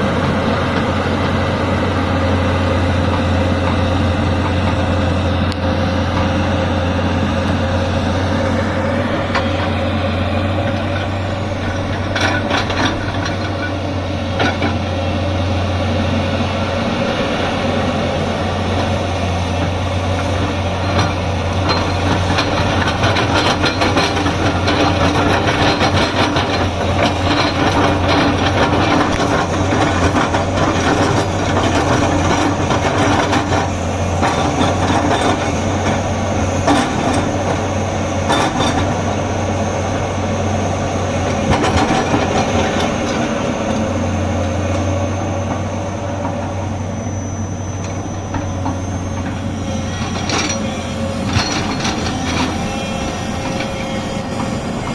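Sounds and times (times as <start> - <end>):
excavator diesel engine running: 0.0 - 54.9
knocks and clanks: 41.3 - 43.2, 47.9 - 54.9.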